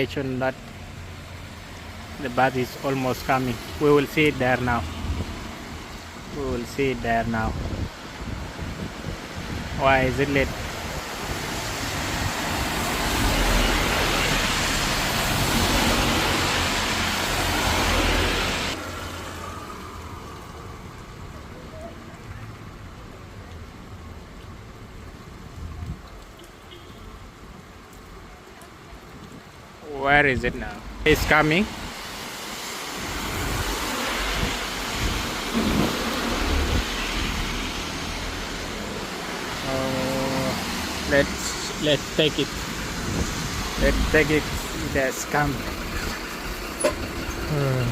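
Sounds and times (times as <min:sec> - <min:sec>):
tyres hissing on wet road: 0:00.0 - 0:47.9
vehicle engine rumble: 0:33.1 - 0:47.9.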